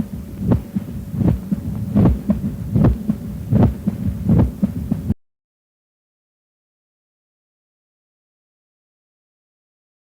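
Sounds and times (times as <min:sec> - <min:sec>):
heartbeat sounds: 0:00.0 - 0:05.2
steady hum: 0:00.0 - 0:05.2.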